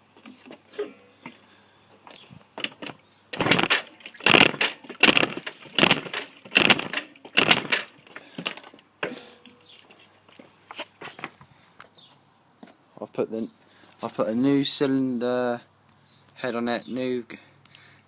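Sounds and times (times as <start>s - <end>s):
scooter engine turning over: 2.6s - 8.8s.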